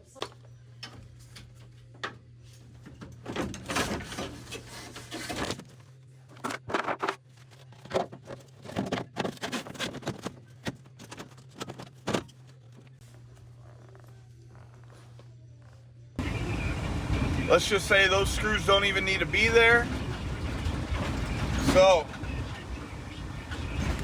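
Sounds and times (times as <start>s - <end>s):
steady low hum: 16.1s - 24.0s.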